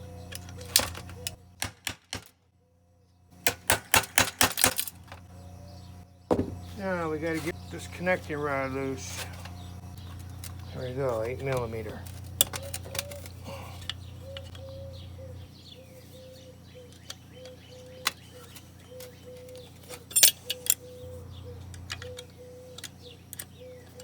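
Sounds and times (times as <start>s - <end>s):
birds chirping: 0.0s - 1.6s, 5.0s - 24.0s
metallic clinks of tools: 19.9s - 20.8s.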